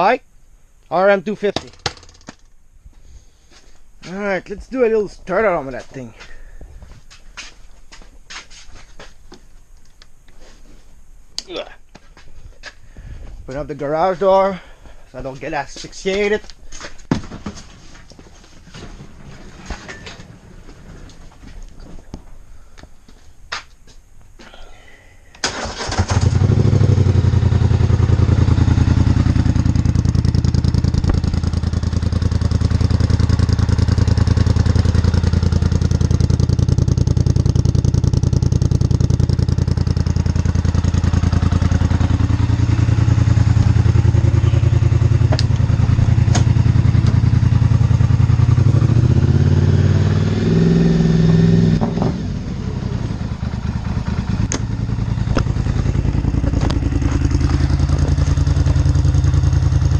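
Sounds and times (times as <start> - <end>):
atv engine idling: 25.6 - 59.9.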